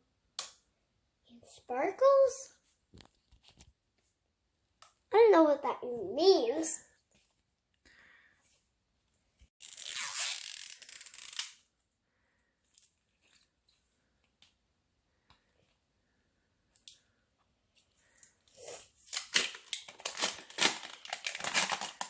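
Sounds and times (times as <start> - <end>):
packaging wrapper tearing: 18.6 - 22.0.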